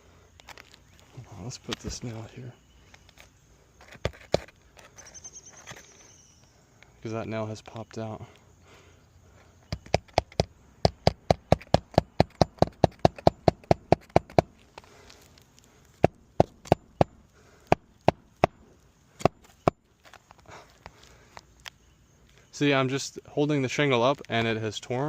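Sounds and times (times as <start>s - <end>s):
hammer striking nail: 9.7s - 14.5s, 16.0s - 18.6s.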